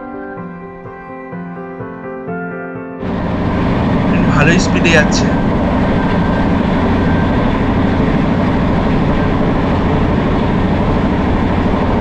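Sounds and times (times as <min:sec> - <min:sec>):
train wheels rumbling and rattling: 0:03.0 - 0:12.0.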